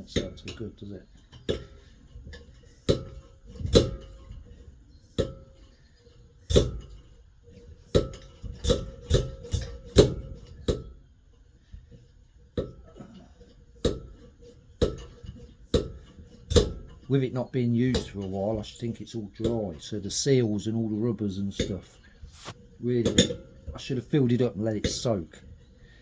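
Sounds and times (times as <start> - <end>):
stove hand pump knocking strokes: 0.0 - 11.0, 11.6 - 20.2, 21.5 - 26.0.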